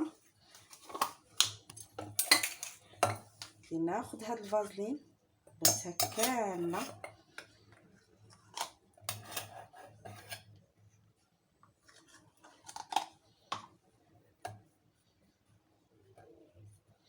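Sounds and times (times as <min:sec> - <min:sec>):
utensil scraping and clinking: 0:05.7 - 0:07.2, 0:08.4 - 0:10.5.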